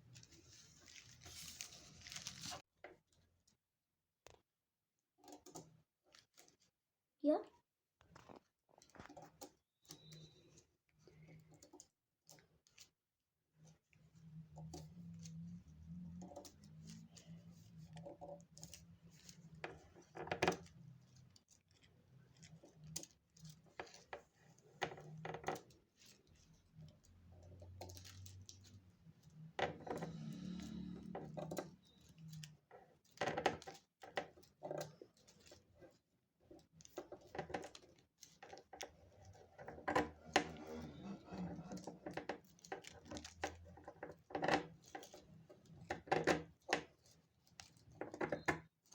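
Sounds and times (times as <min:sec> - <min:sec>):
paper crinkling and rustling: 0:00.0 - 0:02.7.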